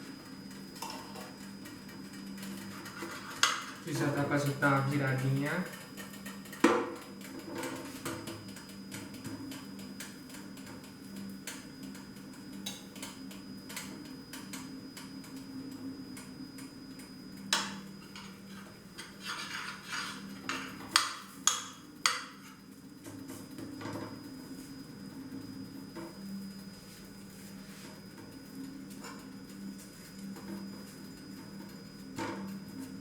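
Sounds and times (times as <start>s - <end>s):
metal utensil scraping frying pan: 18.2s - 20.7s.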